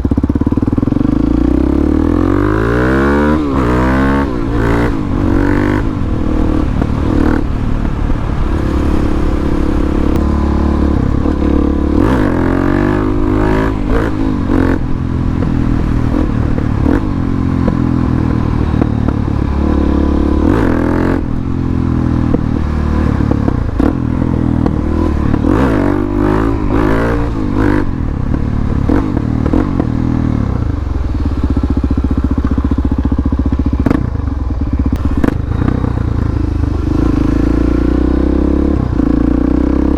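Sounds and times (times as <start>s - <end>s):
motorcycle engine accelerating: 0.0s - 39.9s.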